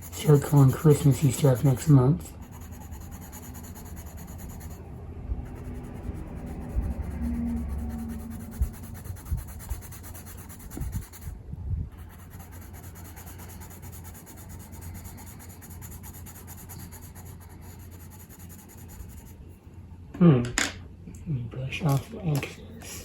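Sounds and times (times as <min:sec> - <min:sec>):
colouring tool scratching paper: 0:00.0 - 0:04.8, 0:05.5 - 0:11.3, 0:12.0 - 0:19.4.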